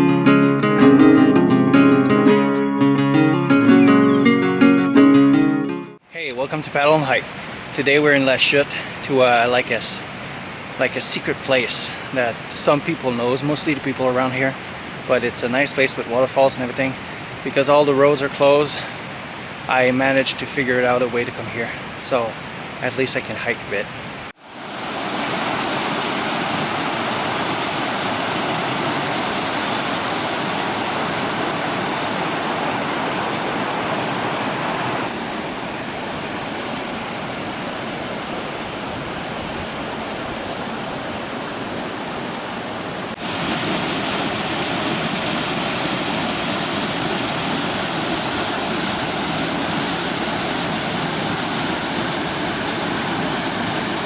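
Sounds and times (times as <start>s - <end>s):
waterfall hissing: 24.4s - 35.1s, 43.0s - 54.0s.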